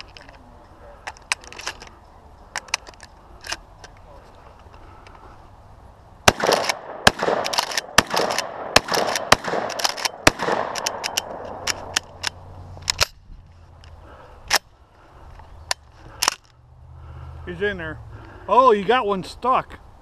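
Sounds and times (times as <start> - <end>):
shotgun shots with echo: 6.3 - 11.6
sharp clicks: 6.4 - 13.2.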